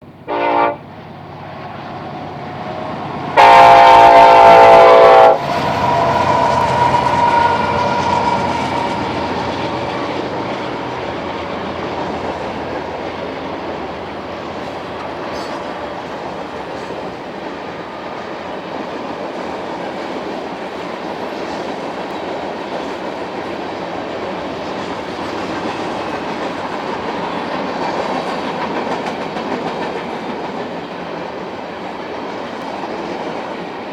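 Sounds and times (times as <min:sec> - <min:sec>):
train horn blasts: 0:00.0 - 0:01.0, 0:01.6 - 0:11.6
train rumbling past: 0:00.0 - 0:33.9
wheels clacking over rail joints: 0:05.4 - 0:33.9.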